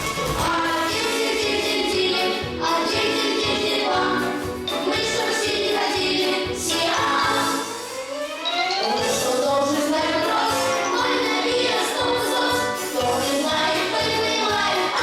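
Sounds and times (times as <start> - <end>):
choir-like singing over a beat: 0.0 - 7.9, 9.0 - 15.0.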